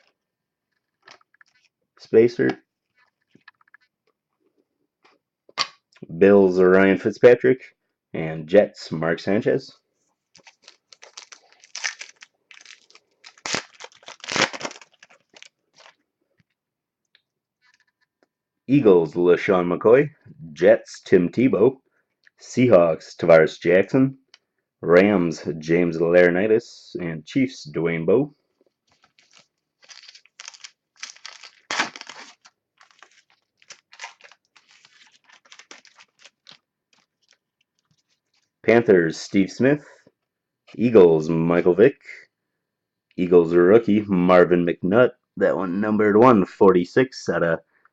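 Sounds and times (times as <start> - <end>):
cards rustling and scraping: 0.7 - 1.8, 2.8 - 3.9, 10.2 - 16.0, 17.6 - 18.1, 28.6 - 38.6.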